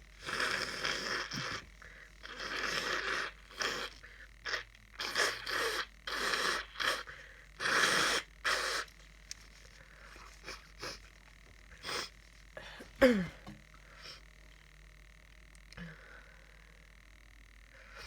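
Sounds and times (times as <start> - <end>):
person sniffing congested nose: 11.8 - 12.1.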